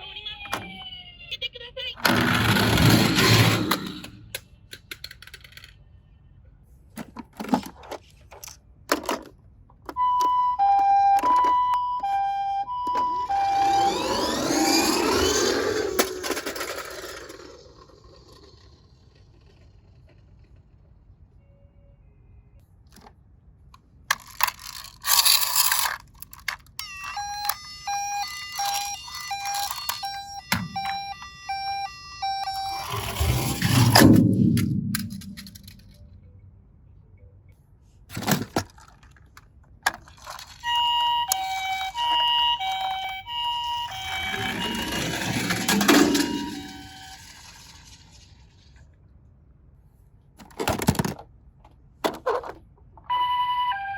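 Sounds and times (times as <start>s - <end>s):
two-tone ambulance siren: 9.9s - 16.2s, 26.8s - 34.0s, 40.6s - 47.7s, 53.0s - 53.9s.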